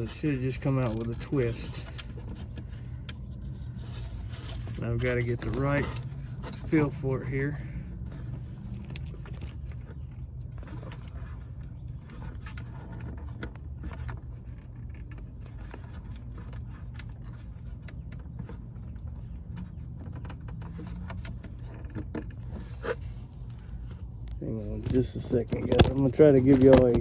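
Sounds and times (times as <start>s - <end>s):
plastic clicks and scrapes: 0.0s - 27.0s
steady low hum: 0.0s - 27.0s.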